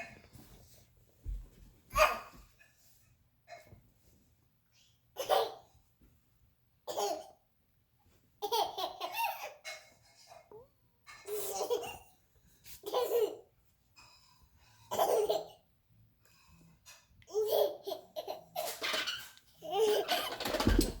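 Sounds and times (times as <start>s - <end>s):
baby laughing: 5.2s - 5.7s, 8.4s - 9.7s, 11.3s - 12.1s, 12.8s - 13.4s, 14.9s - 15.6s, 17.3s - 21.0s.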